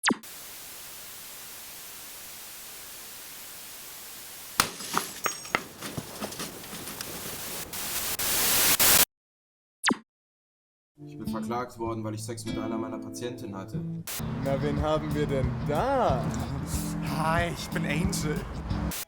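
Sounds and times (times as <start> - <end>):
static hiss: 0.3 - 4.6, 7.0 - 9.0.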